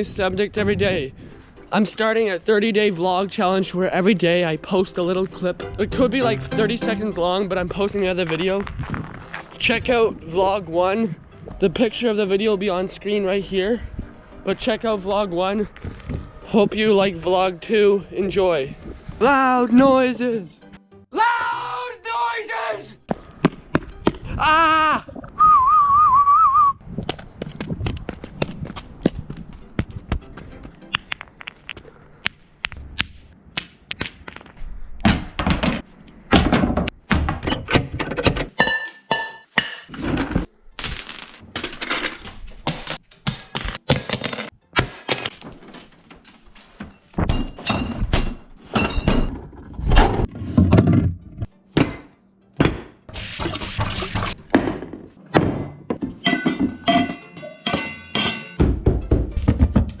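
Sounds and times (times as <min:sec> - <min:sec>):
music playing: 0:00.6 - 0:08.6, 0:09.2 - 0:25.0, 0:29.4 - 0:31.7.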